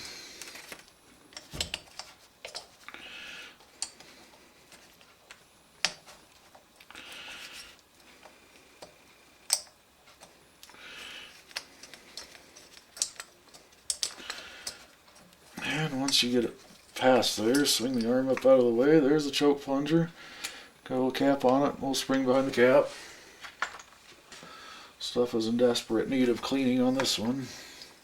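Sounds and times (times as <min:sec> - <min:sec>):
small metal clicks and taps: 0:08.8 - 0:10.8, 0:11.5 - 0:15.4.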